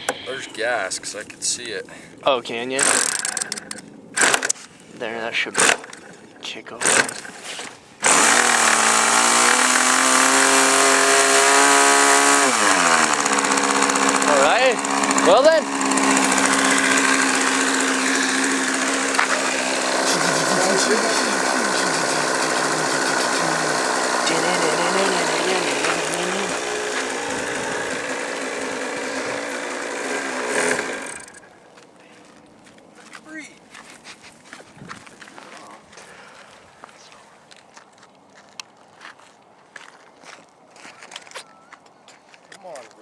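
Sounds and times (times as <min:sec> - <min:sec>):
model airplane engine buzzing: 0:06.8 - 0:31.5.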